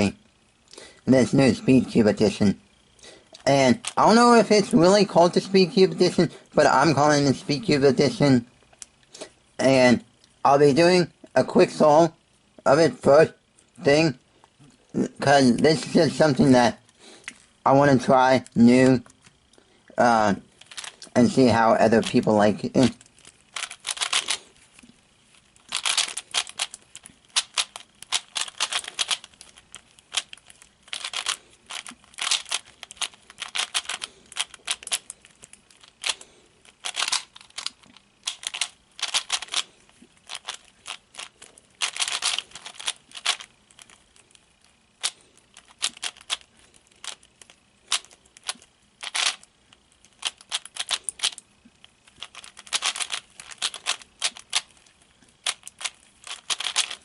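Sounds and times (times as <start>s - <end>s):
puzzle cube plastic clicking: 3.4s - 5.1s, 20.6s - 21.2s, 21.8s - 24.9s, 25.5s - 57.0s.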